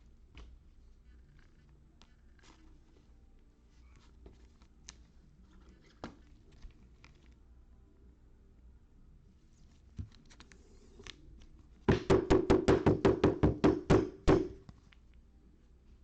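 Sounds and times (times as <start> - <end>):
sharp knocks on hard surface: 11.9 - 14.6.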